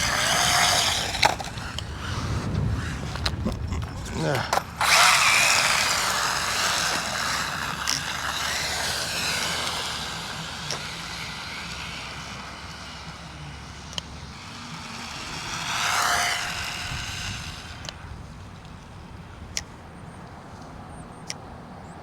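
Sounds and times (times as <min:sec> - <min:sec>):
rc car motor whining: 0:00.0 - 0:20.5
sharp ticks: 0:04.5 - 0:21.4.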